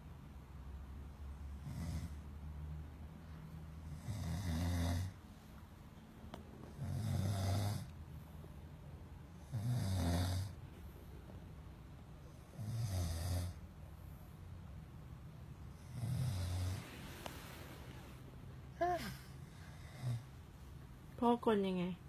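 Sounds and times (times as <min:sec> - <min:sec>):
person snoring loudly: 0:03.9 - 0:05.2, 0:06.8 - 0:07.9, 0:09.4 - 0:10.6, 0:12.5 - 0:13.6, 0:15.8 - 0:16.9
quiet breathing: 0:15.6 - 0:20.8.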